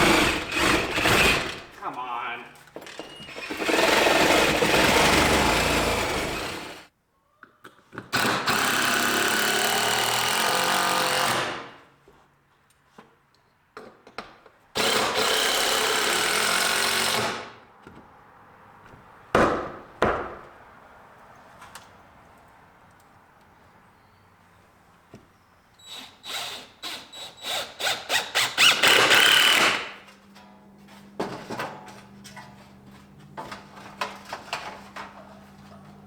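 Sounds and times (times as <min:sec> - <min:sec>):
power tool running: 0:00.0 - 0:01.7, 0:03.1 - 0:06.9, 0:27.4 - 0:30.0
sharp knocks: 0:19.3 - 0:20.5.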